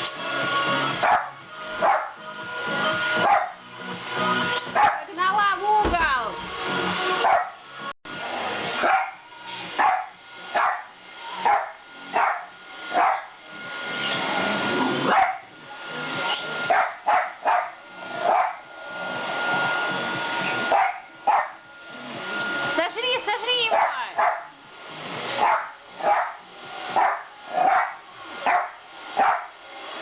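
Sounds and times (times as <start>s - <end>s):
dog barking: 1.0s - 2.2s, 3.2s - 3.6s, 4.6s - 5.1s, 7.2s - 7.6s, 8.8s - 9.2s, 9.8s - 13.3s, 15.1s - 15.5s, 16.7s - 18.6s, 20.7s - 21.6s, 23.7s - 24.5s, 25.4s - 26.4s, 27.0s - 29.5s
robot vacuum motor whine: 7.8s - 16.7s, 17.8s - 23.6s.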